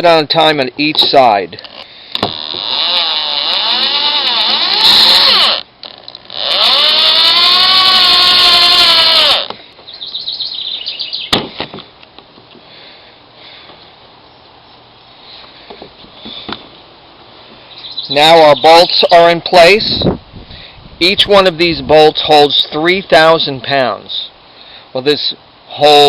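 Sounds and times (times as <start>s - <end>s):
power drill driving bolts: 1.0s - 9.6s.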